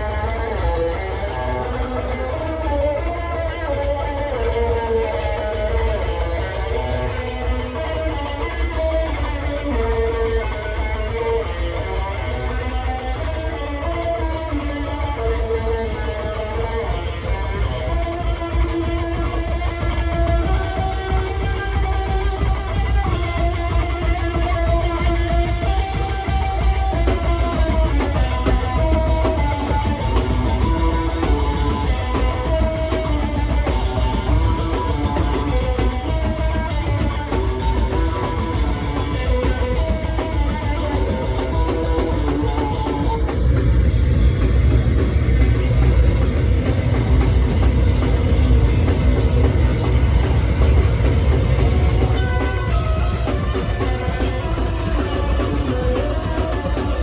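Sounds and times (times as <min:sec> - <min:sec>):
effects-laden bass guitar riff: 0:00.0 - 0:57.0
rapid drumming: 0:00.0 - 0:57.0.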